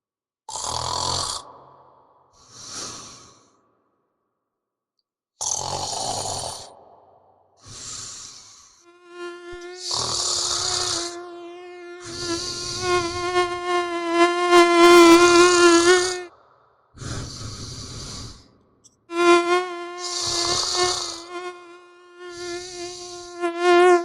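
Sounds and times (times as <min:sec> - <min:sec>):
person snoring: 0:00.5 - 0:01.8, 0:02.4 - 0:03.5, 0:05.4 - 0:06.8, 0:07.6 - 0:11.3, 0:11.9 - 0:13.7, 0:15.1 - 0:16.3, 0:17.0 - 0:18.5, 0:19.1 - 0:23.4
mosquito whining: 0:08.9 - 0:16.3, 0:19.1 - 0:24.0.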